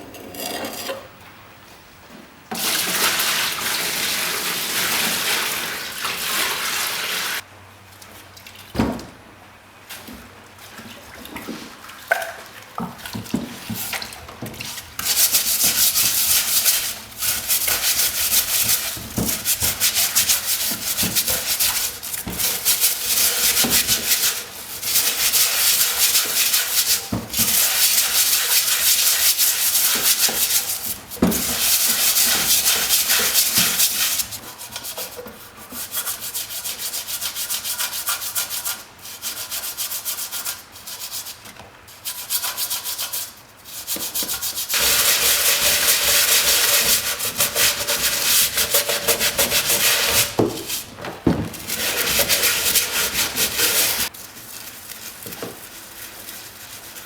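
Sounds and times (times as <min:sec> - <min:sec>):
hand sanding scratchy rubbing: 0:15.0 - 0:35.1, 0:42.1 - 0:57.0
small knocks: 0:50.2 - 0:51.7.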